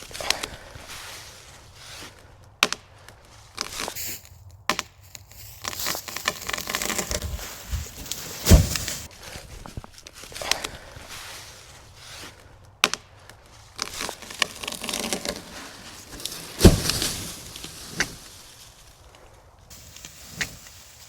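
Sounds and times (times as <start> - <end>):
tree trunk cracking and splintering: 4.7 - 10.7, 12.8 - 19.2
tree thudding on ground: 5.6 - 9.1, 13.8 - 18.4.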